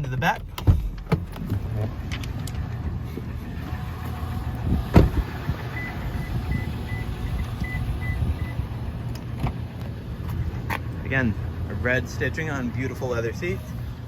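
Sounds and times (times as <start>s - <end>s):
low handling rumble: 0.0s - 14.0s
car door thump: 4.6s - 5.9s, 9.3s - 9.6s
car warning chime beeps: 5.6s - 8.7s.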